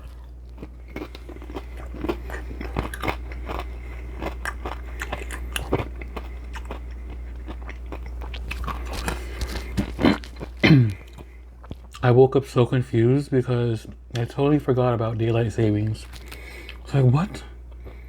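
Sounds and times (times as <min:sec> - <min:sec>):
person chewing food: 0:00.0 - 0:12.0, 0:15.3 - 0:18.0
wet smacks and crunchy clicks: 0:00.0 - 0:12.1, 0:15.8 - 0:17.0
steady low hum: 0:00.0 - 0:18.0.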